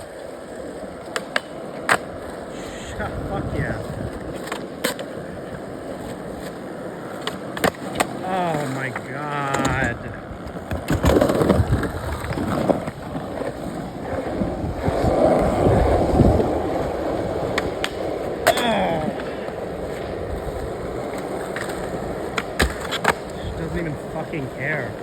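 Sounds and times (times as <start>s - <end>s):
skateboard clacks: 0.0s - 25.0s
skateboard wheels rumbling: 0.0s - 25.0s.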